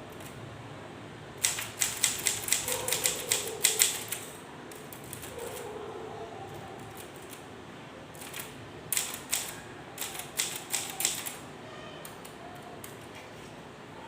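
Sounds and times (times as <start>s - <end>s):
typewriter keys clacking: 1.4s - 5.6s, 6.8s - 7.4s, 8.2s - 11.4s.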